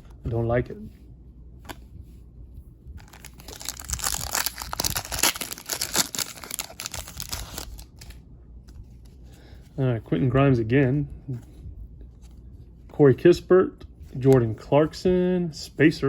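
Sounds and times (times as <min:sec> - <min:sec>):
foil wrapper tearing and crinkling: 0:03.0 - 0:08.2.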